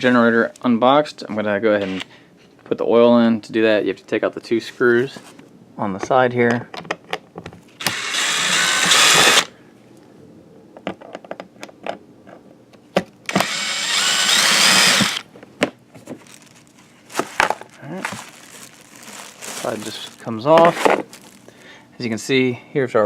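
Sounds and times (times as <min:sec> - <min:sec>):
power screwdriver whirring: 0:07.8 - 0:09.5, 0:13.3 - 0:15.2.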